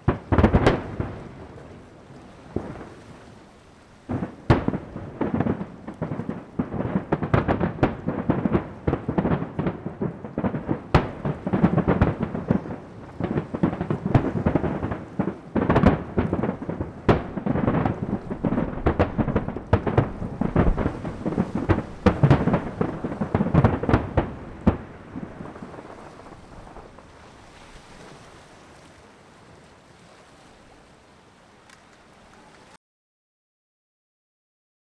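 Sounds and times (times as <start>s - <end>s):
fireworks bursts and crackling bangs: 0.0s - 28.4s
echoing rumble: 9.4s - 27.1s.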